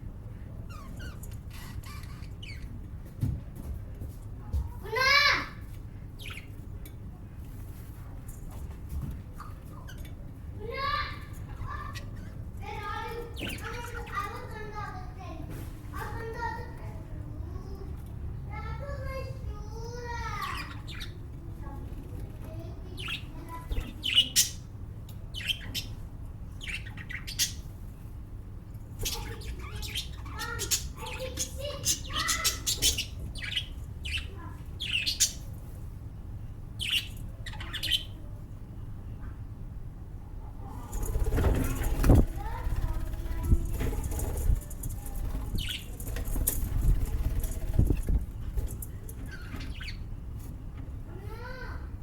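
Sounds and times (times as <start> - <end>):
lovebirds chirping and squawking: 0.3 - 2.8, 6.1 - 6.6, 9.4 - 14.9, 18.6 - 21.8, 22.8 - 27.8, 28.9 - 35.6, 36.7 - 38.3, 40.6 - 50.3
lovebird chirp: 36.8 - 38.2, 44.5 - 46.0, 49.3 - 50.0.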